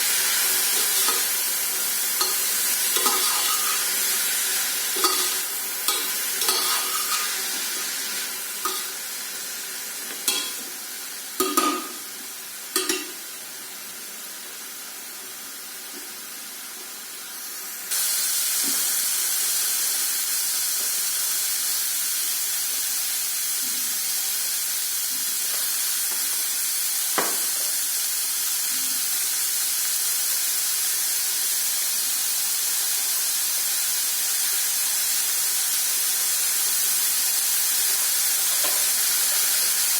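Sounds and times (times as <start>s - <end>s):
food sizzling in hot oil: 0.0s - 39.9s
spatula knocking and scraping pan: 2.2s - 4.0s, 5.0s - 7.7s, 8.6s - 9.0s.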